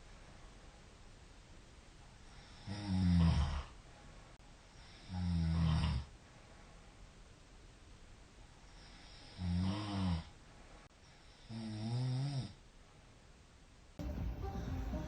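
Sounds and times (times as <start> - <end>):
faint steady hiss: 0.0 - 15.0
man snoring: 2.4 - 3.7, 4.9 - 6.1, 8.9 - 10.3, 11.4 - 12.6
background music: 14.0 - 15.0.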